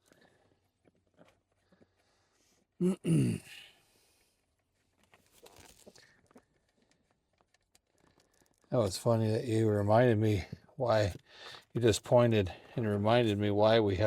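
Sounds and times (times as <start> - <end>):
faint rustling: 4.1 - 8.9
man's voice: 11.8 - 14.0.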